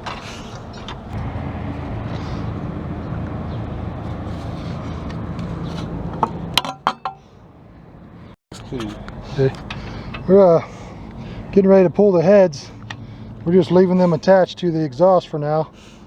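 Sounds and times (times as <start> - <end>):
low engine rumble: 0.0 - 16.0
faint hum: 0.4 - 5.4.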